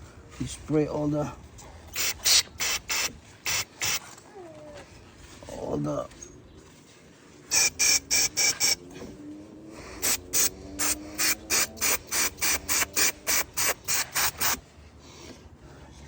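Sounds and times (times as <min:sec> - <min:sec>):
aerosol spray spurts: 0:01.9 - 0:04.0, 0:07.5 - 0:08.8, 0:10.0 - 0:14.6.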